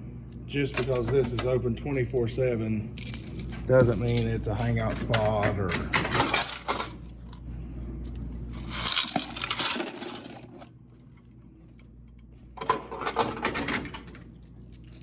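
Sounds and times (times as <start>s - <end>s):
small metal objects jingling: 8.6s - 10.5s, 14.2s - 15.0s.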